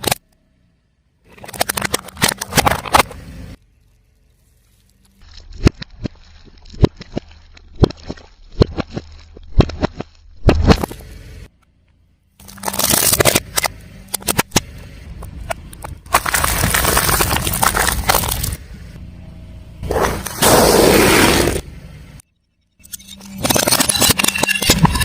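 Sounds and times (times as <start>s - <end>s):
tyre crushing crunchy objects: 12.4s - 14.6s, 16.0s - 18.7s.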